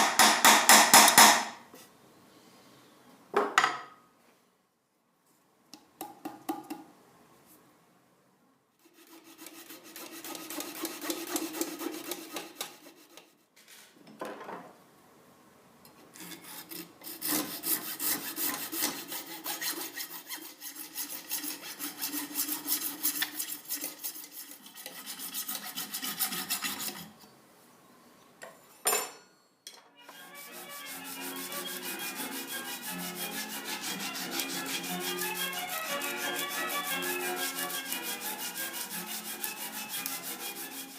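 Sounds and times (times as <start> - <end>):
abrasive tool rubbing: 8.9 - 13.2, 30.1 - 40.9.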